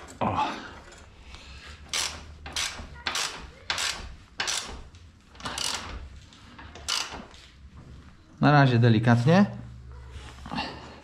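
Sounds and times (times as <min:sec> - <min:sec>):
ratchet wrench strokes: 0:01.8 - 0:04.8, 0:05.4 - 0:06.0, 0:06.8 - 0:07.2.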